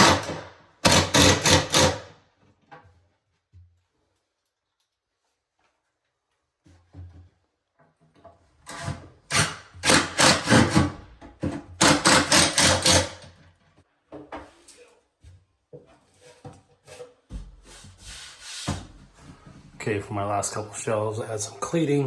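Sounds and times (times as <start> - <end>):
faint knocks and scrapes: 2.4 - 9.3, 13.6 - 19.9.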